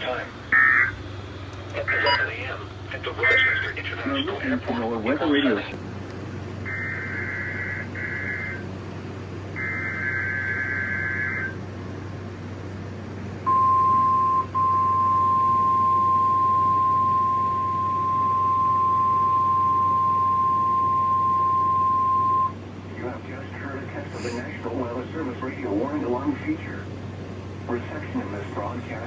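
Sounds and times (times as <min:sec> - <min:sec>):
receiver hiss and hum: 0:00.0 - 0:29.0
screechy warbling data burst: 0:00.5 - 0:01.0, 0:01.9 - 0:02.3, 0:06.7 - 0:08.6, 0:09.6 - 0:11.6
high alarm tone beep: 0:02.0 - 0:02.3, 0:09.6 - 0:11.6, 0:13.5 - 0:22.6.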